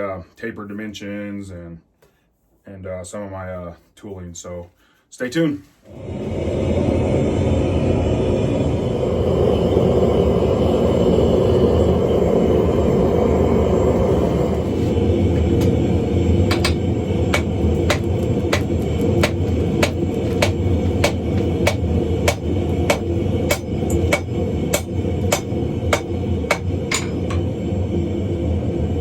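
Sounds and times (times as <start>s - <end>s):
steady low rumble: 5.9s - 29.0s
hammer blows on hot steel: 16.4s - 27.5s.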